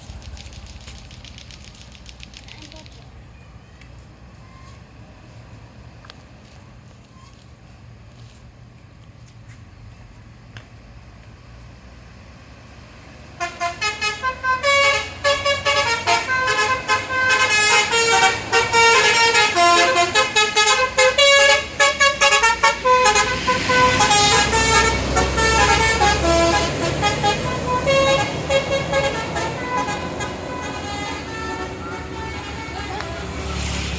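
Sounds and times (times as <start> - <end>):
bus engine rumble: 0.0 - 33.9
multi-tone bus horn melody: 13.3 - 33.9.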